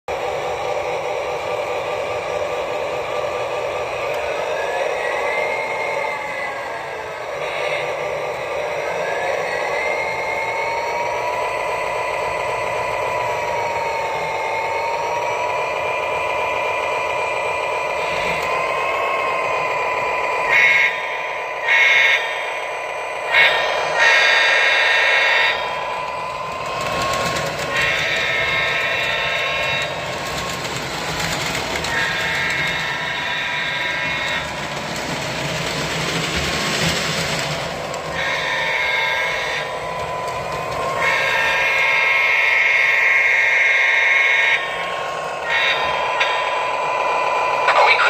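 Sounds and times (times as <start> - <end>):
model locomotive diesel horn: 7.2 - 8.0, 20.4 - 26.2, 27.0 - 30.2, 31.8 - 34.5, 38.1 - 40.2, 40.8 - 48.0.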